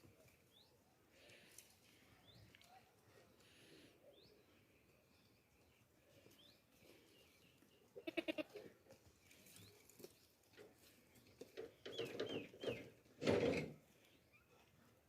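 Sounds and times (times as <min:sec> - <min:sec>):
baby goats bleating: 0:08.0 - 0:08.5.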